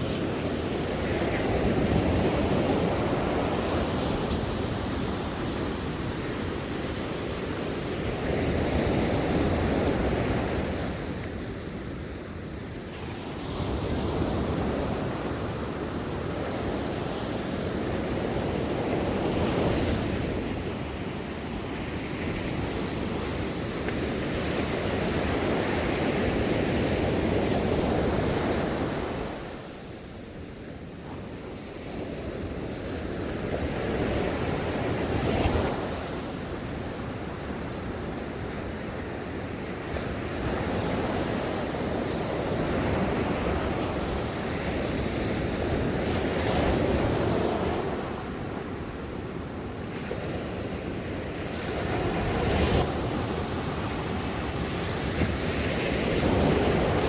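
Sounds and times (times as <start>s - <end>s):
ocean waves breaking on shore: 31.2s - 57.0s.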